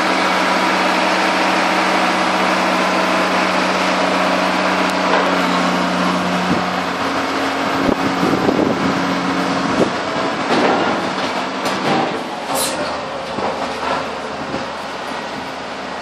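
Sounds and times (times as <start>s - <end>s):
motor humming: 0.0s - 10.5s.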